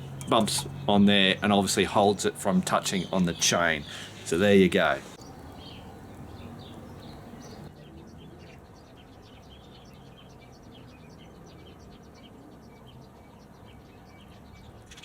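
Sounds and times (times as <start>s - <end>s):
low steady rumble: 0.0s - 7.7s
small birds chirping: 0.0s - 15.0s.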